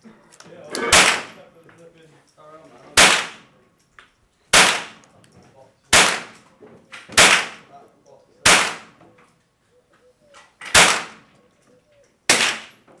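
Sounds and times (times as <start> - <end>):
pistol shots: 0.9 - 1.4, 3.0 - 3.4, 4.5 - 5.0, 5.9 - 6.4, 7.1 - 7.7, 8.4 - 9.0, 10.7 - 11.3, 12.3 - 12.8.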